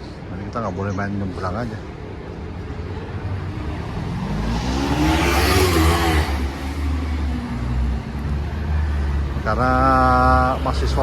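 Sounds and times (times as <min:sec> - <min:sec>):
low traffic rumble: 0:00.0 - 0:11.0
car passing by: 0:03.4 - 0:11.0.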